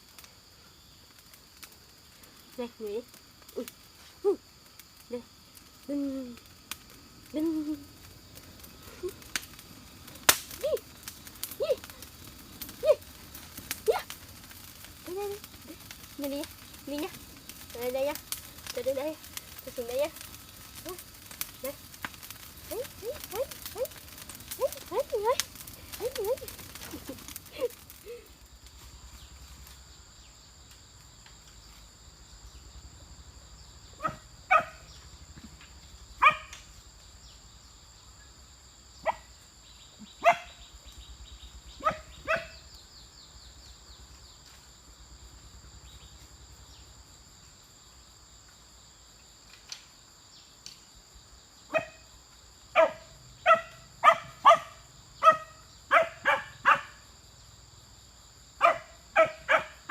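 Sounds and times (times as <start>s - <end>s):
dog barking: 34.0s - 34.9s, 36.2s - 36.5s, 39.0s - 39.3s, 40.2s - 40.6s, 41.8s - 42.6s, 51.7s - 52.0s, 52.7s - 57.0s, 58.6s - 59.9s.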